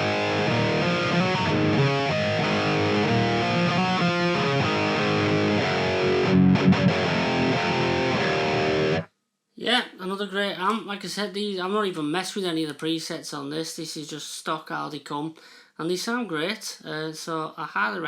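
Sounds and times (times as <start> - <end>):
distorted electric guitar riffing: 0.0 - 9.1.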